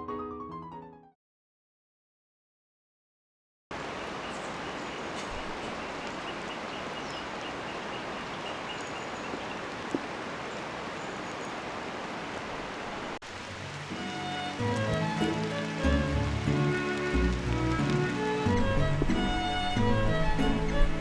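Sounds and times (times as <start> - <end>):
bird chirps: 3.9 - 11.6.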